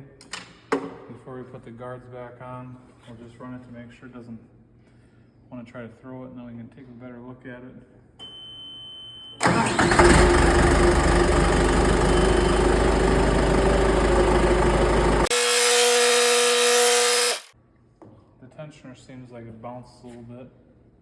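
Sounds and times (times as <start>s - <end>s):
short steady beep: 8.2s - 9.4s
tractor diesel engine running: 9.5s - 15.3s.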